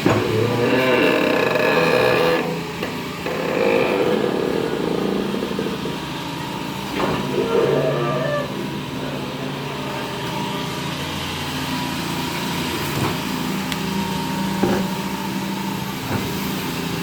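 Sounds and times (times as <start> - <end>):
excavator engine running: 0.0 - 17.0
high squeal: 3.9 - 9.2.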